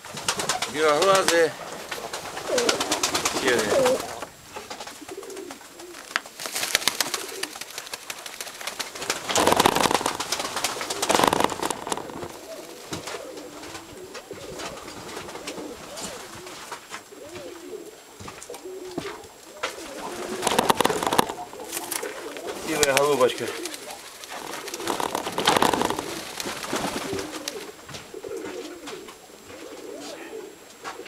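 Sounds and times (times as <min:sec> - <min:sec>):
pigeons cooing: 0:00.0 - 0:31.0
rustling noise: 0:00.2 - 0:30.0.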